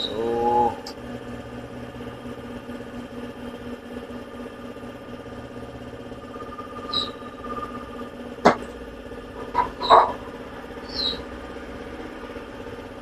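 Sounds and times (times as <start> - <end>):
small engine humming: 0.0 - 13.0.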